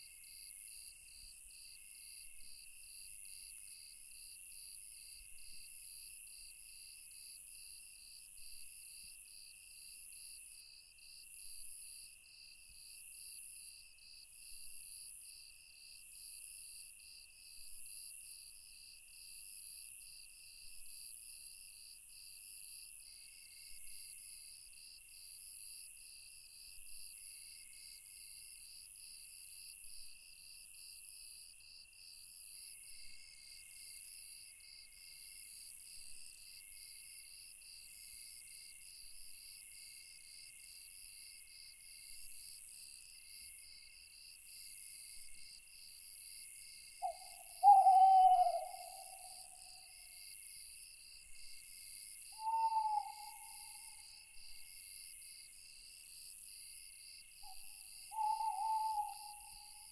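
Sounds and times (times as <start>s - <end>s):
crickets chirping: 22.7s - 59.9s
high shrill insect trill: 47.0s - 49.7s, 52.4s - 54.2s, 57.5s - 59.9s.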